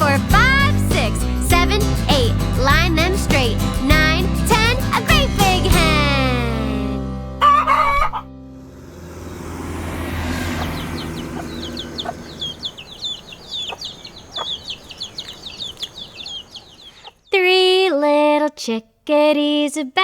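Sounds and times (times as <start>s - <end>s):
children's song: 0.0s - 7.1s, 17.3s - 20.0s
chicks peeping: 10.4s - 17.4s.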